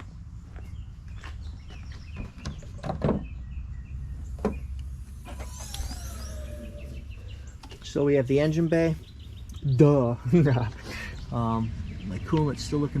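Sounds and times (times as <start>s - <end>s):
steady low rumble: 3.3s - 13.0s.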